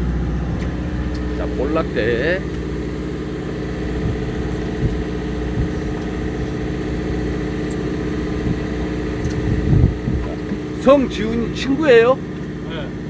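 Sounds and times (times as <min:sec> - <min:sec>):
boat engine idling: 0:00.0 - 0:13.0.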